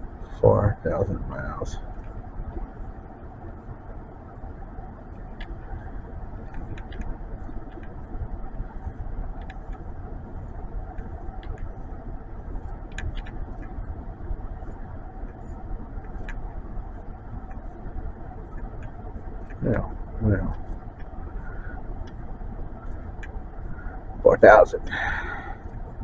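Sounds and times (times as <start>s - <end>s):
car engine hum inside cabin: 0.0s - 26.0s
light clicks: 6.4s - 7.1s, 10.9s - 11.8s, 12.6s - 13.8s, 15.2s - 16.4s.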